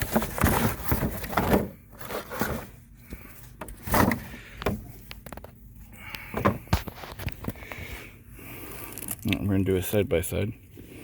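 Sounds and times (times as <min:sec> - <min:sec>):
filter scraping and rustling: 0:00.0 - 0:08.1.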